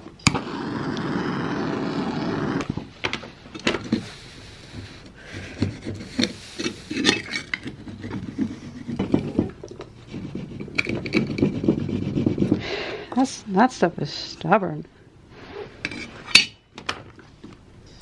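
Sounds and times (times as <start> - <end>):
hand tool scraping metal: 5.6 - 9.4, 15.5 - 16.5.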